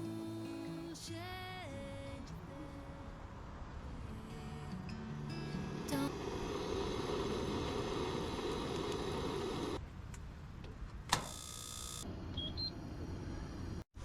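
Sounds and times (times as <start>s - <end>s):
background song: 0.0s - 3.4s, 4.0s - 6.3s
buzzing electronic tone: 11.3s - 12.0s.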